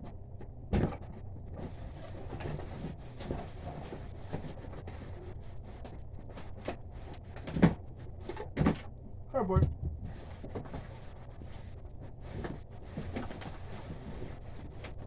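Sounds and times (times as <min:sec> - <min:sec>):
steady low rumble: 0:09.4 - 0:10.2.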